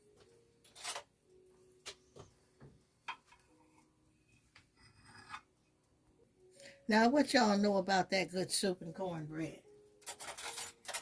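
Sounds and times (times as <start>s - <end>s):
utensils clicking against dishes: 10.0s - 11.0s.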